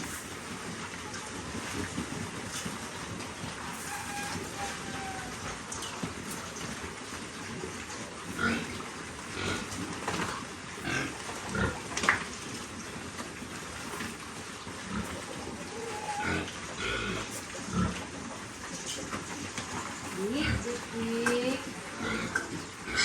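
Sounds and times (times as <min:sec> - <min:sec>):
piglets grunting and squealing: 0:03.8 - 0:05.8, 0:10.8 - 0:11.9, 0:14.8 - 0:18.2, 0:20.0 - 0:23.0.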